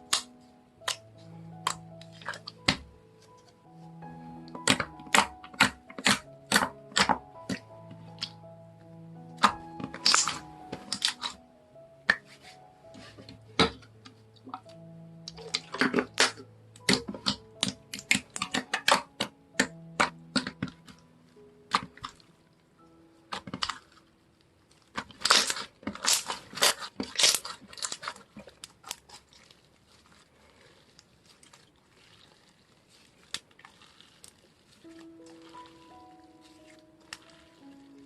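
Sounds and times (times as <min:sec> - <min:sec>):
slime clicking and popping: 0:00.0 - 0:02.9, 0:04.5 - 0:08.4, 0:09.4 - 0:11.4, 0:13.6 - 0:21.0, 0:21.7 - 0:22.2, 0:24.8 - 0:38.0
soft background music: 0:00.0 - 0:29.2, 0:29.8 - 0:38.0.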